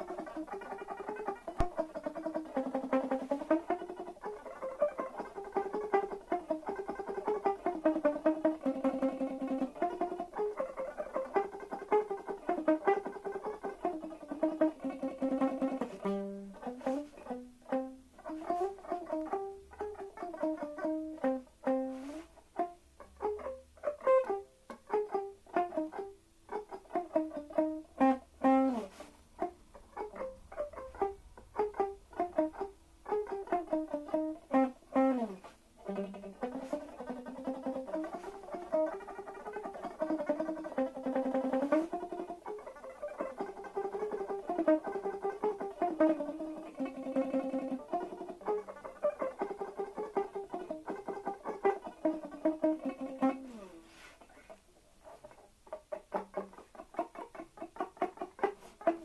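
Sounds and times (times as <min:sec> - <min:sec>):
electric guitar with tremolo: 0:00.0 - 0:59.0.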